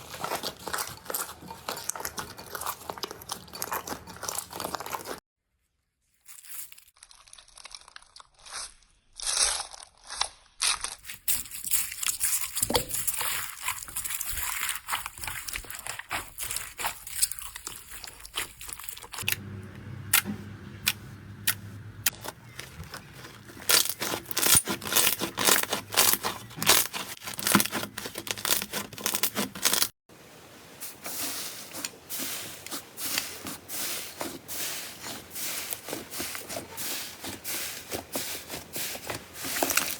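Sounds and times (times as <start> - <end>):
slime tearing and crinkling: 0.0 - 5.2, 6.3 - 19.4, 20.9 - 29.9.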